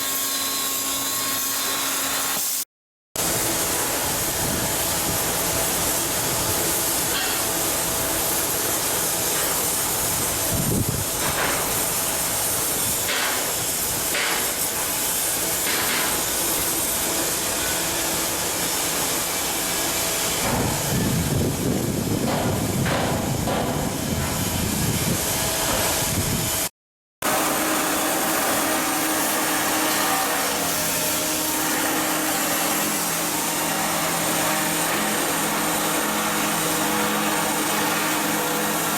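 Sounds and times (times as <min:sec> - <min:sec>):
heavy work rumble: 0:20.2 - 0:26.7.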